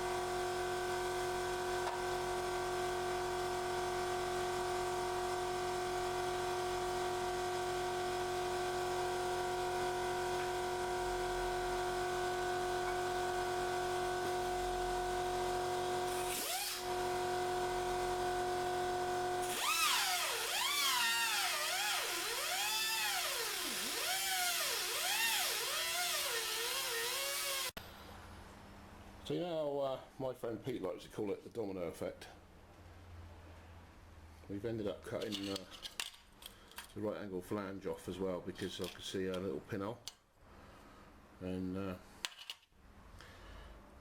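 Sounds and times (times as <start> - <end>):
angle grinder cutting steel: 16.1 - 17.0, 19.4 - 27.8.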